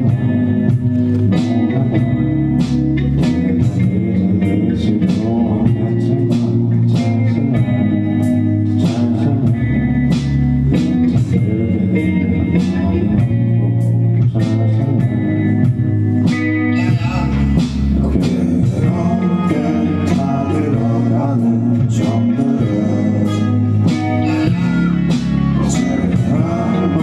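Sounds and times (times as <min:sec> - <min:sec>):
bass guitar: 0:00.0 - 0:27.0
guitar: 0:00.0 - 0:27.0
drum beat: 0:23.8 - 0:27.0.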